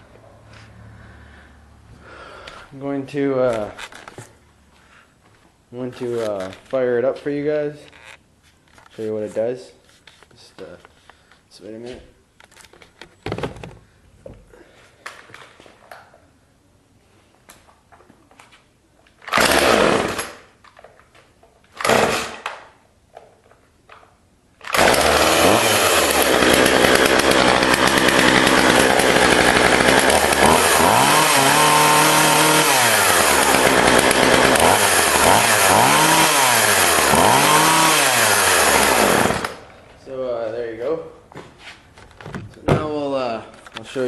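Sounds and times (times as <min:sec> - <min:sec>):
chainsaw pull cord bursts: 0:19.3 - 0:20.5, 0:21.7 - 0:22.6, 0:24.6 - 0:39.7
chainsaw running and revving: 0:19.4 - 0:20.4, 0:21.8 - 0:22.4, 0:24.7 - 0:39.6.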